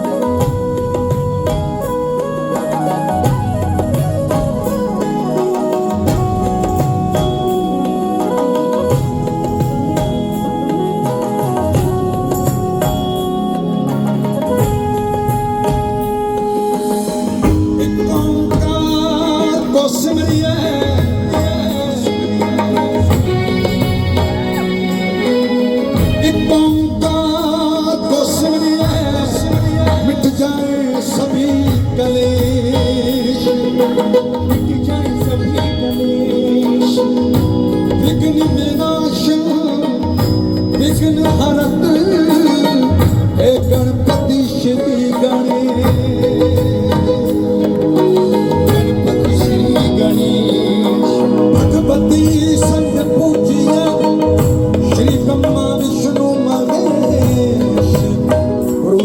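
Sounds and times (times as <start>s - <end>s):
keyboard chords: 0.0s - 59.0s
live band music: 0.0s - 59.0s
percussion: 0.0s - 59.0s
wavering melody line: 0.0s - 59.0s
low drum beat: 17.4s - 22.2s.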